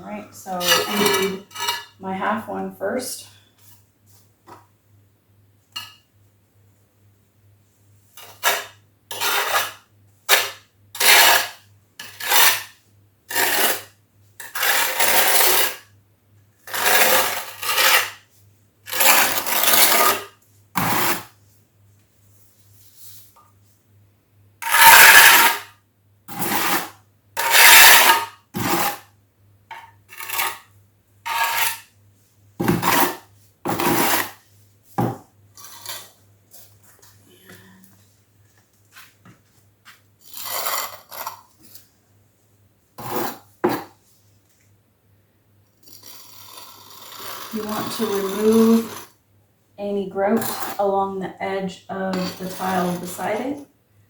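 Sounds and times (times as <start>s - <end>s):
steel trowel scraping mortar: 0.5s - 1.9s, 8.2s - 15.8s, 16.7s - 18.2s, 18.9s - 21.3s, 24.6s - 25.7s, 26.3s - 29.0s, 30.1s - 30.7s, 31.3s - 31.9s, 32.6s - 34.4s, 35.6s - 36.2s, 40.2s - 41.9s, 43.0s - 43.9s, 45.9s - 49.1s, 50.3s - 51.0s, 52.0s - 53.5s.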